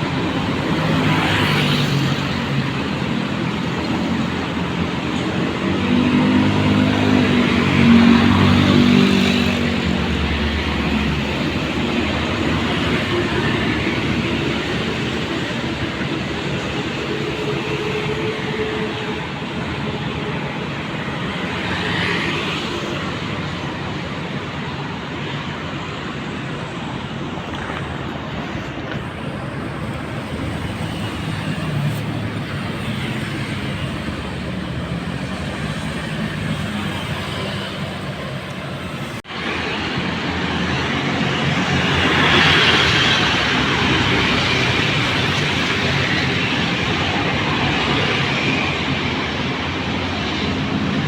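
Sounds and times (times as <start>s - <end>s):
road traffic passing: 0.0s - 51.0s.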